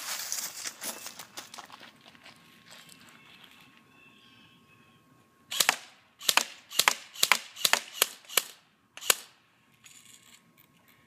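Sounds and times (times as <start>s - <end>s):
airsoft rifle shots: 5.5s - 9.3s.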